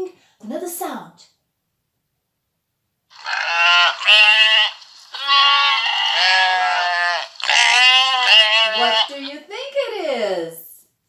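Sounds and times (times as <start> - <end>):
sheep bleating: 3.1 - 9.2.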